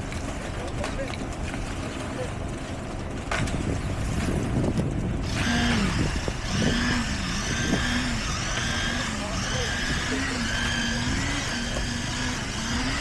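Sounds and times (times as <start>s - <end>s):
heavy machinery engines rumbling: 5.2s - 13.0s.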